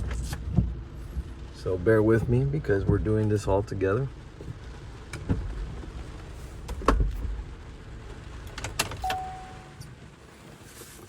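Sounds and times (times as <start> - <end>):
clicks and clunks in car: 6.6 - 7.2, 8.4 - 9.9
short steady beep: 9.0 - 9.8.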